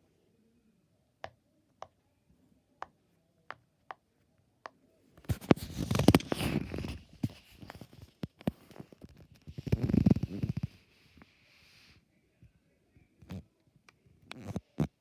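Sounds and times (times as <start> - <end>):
scratchy rubbing on silicone: 5.2 - 12.0.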